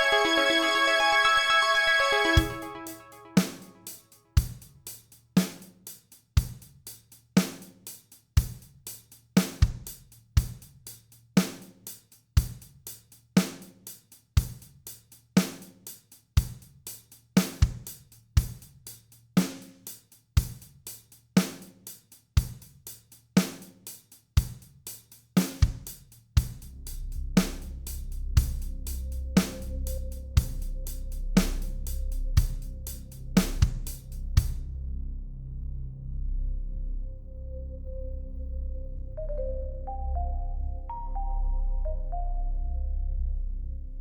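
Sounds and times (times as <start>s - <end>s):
steady drum beat: 2.4s - 34.6s.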